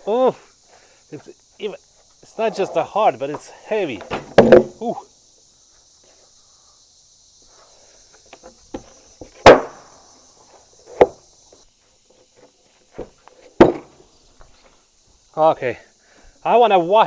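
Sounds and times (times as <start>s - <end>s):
wooden slabs knocking: 3.3s - 4.9s, 8.4s - 9.8s, 10.9s - 11.2s, 12.4s - 14.0s.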